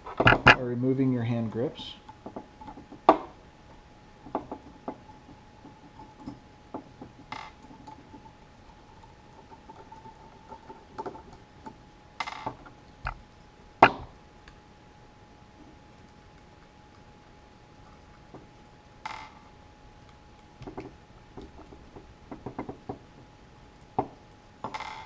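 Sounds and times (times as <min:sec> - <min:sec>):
small metal parts clicking: 0:04.2 - 0:14.0.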